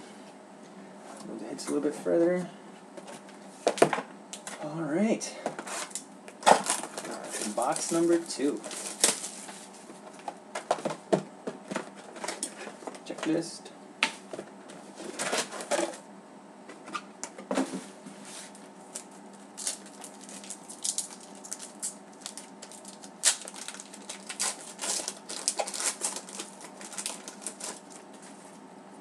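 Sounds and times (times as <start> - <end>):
trading cards and wrapper crackling: 5.7 - 9.6, 18.9 - 28.2.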